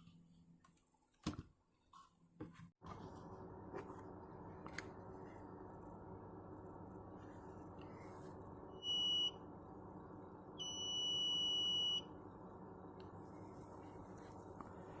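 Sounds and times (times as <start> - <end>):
alarm buzzer beeping: 8.8 - 9.4, 10.6 - 12.1.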